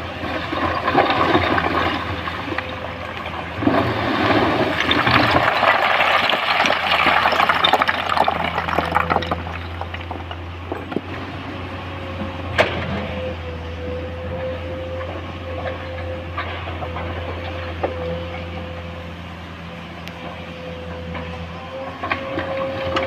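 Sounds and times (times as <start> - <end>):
diesel engine running: 0.0 - 23.0
broken stone pouring and rattling: 3.0 - 10.4.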